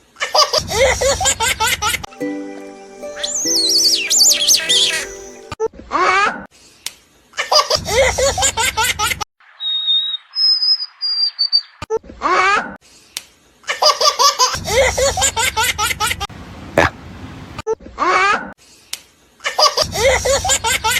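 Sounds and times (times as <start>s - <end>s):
high whistle-like tones: 3.0s - 5.6s
small child giggling: 3.2s - 5.4s.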